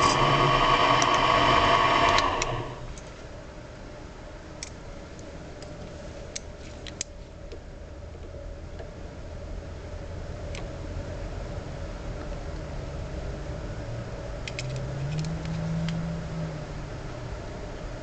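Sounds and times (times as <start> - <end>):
machine tool motor whining: 0.0 - 2.9
quiet steady hum: 0.0 - 18.0.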